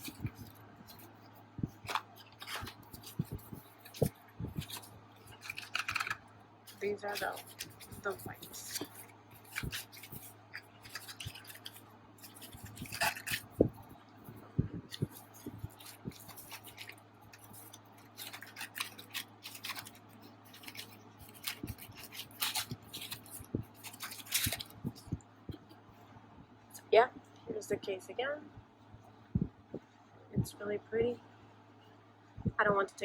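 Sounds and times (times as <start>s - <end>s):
packaging taps and rustles: 0.0s - 13.8s, 14.9s - 25.2s
faint low hum: 0.0s - 33.0s.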